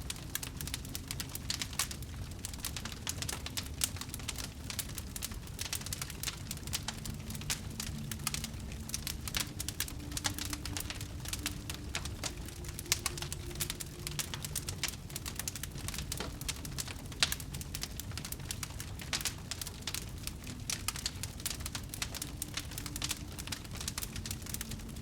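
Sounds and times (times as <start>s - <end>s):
fire crackling: 0.0s - 25.0s.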